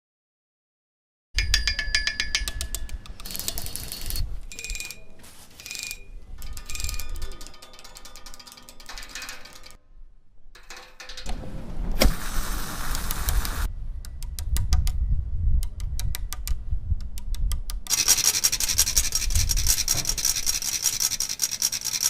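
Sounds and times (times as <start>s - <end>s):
rattling: 1.5s - 9.8s, 10.5s - 12.5s, 17.9s - 22.0s
rapid ratchet-like clicking: 2.4s - 5.0s, 5.6s - 9.8s, 17.1s - 22.0s.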